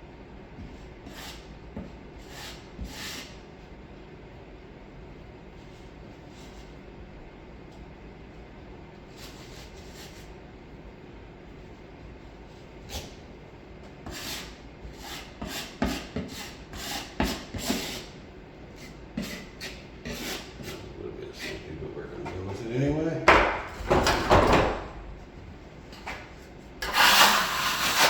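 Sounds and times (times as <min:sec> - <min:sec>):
drywall knife scraping compound: 0:00.6 - 0:01.5, 0:02.2 - 0:03.4, 0:09.1 - 0:10.4, 0:14.0 - 0:22.4, 0:26.8 - 0:28.0.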